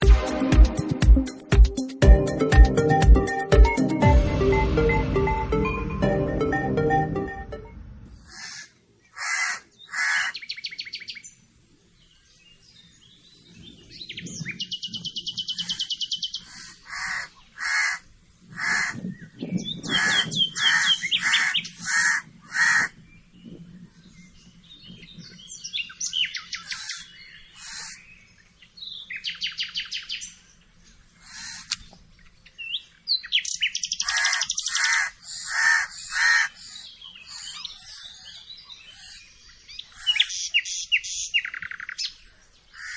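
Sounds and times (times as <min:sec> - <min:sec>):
birds harsh calls: 0:08.2 - 0:11.2, 0:14.2 - 0:23.0, 0:25.5 - 0:30.5, 0:31.2 - 0:42.9
high chattering bird trills: 0:33.3 - 0:38.3.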